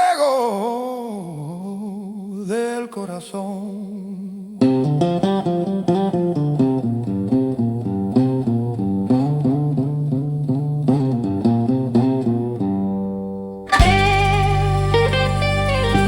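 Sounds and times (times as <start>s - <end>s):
plucked blues guitar: 4.6s - 16.0s
bass line: 13.7s - 16.0s.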